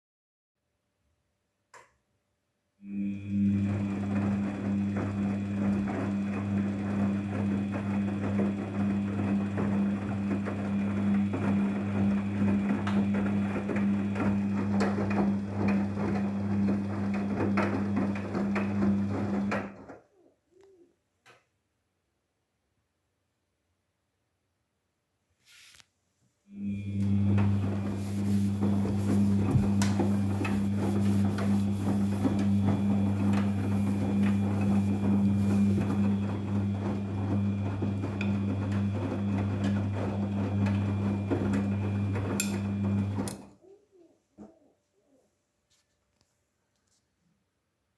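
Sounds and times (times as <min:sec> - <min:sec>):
washing machine motor hum: 0:02.8 - 0:20.0, 0:26.5 - 0:43.5.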